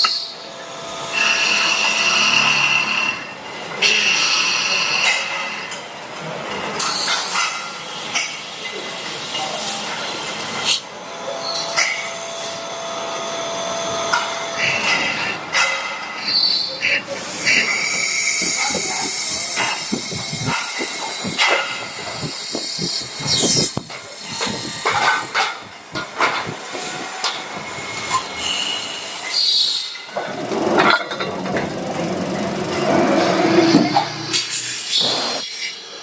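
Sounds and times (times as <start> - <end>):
machine hiss and high whine: 0.0 - 36.0
metal parts and tools clattering: 29.3 - 31.7.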